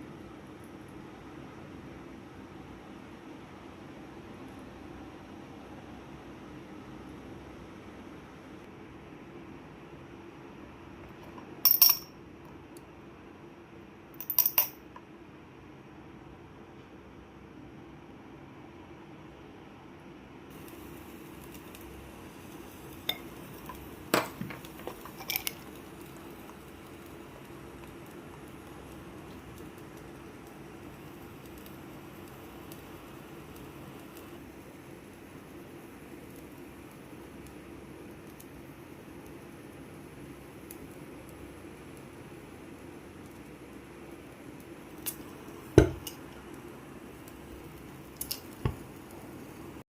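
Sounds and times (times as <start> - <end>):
glassware clinking: 11.7 - 12.1, 14.2 - 14.8, 23.1 - 25.6
glassware clinks: 11.7 - 12.1
sharp hydrogen pop: 45.1 - 46.2.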